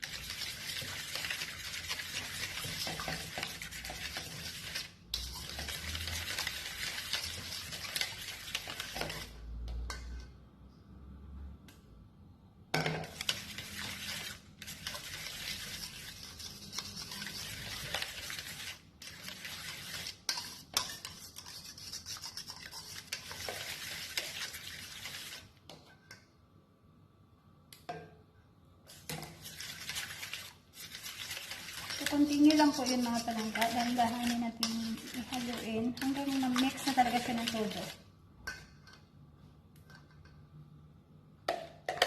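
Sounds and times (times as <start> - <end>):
utensil scraping mixing bowl: 0.0 - 10.4, 13.0 - 25.5, 28.9 - 38.6.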